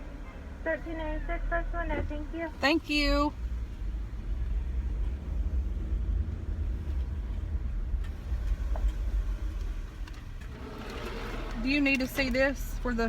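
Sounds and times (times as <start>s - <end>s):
car engine rumble from inside: 0.0s - 13.0s.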